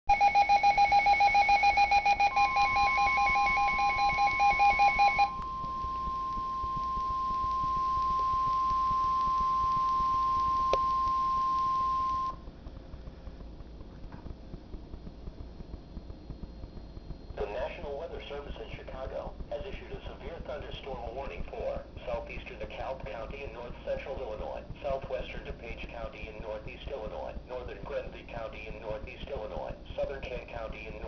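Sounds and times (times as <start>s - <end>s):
rapid pulsing electronic beeps: 0.1s - 12.4s
steady alarm tone: 0.1s - 12.4s
faint radio hiss: 1.3s - 31.0s.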